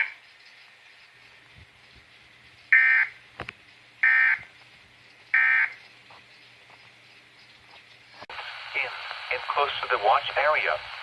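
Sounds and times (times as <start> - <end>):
digital data bursts: 4.0 - 4.5, 5.3 - 5.8.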